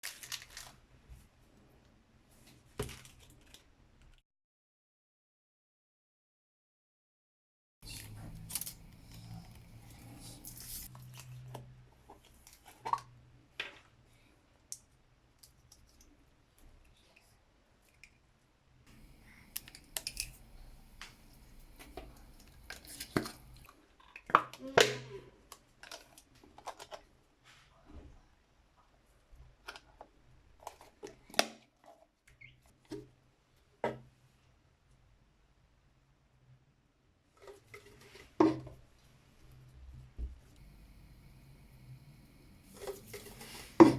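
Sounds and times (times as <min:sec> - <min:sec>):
handling rustling: 0:07.8 - 0:10.9, 0:18.9 - 0:23.7
utensils clicking and knocking: 0:07.8 - 0:10.9, 0:18.9 - 0:23.7
low hum: 0:40.6 - 0:43.9.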